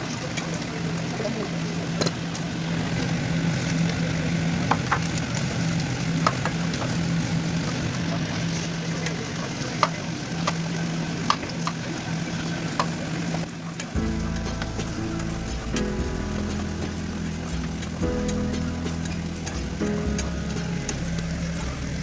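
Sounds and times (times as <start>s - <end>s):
food sizzling in a frying pan: 0.0s - 22.0s
steady low hum: 14.0s - 22.0s.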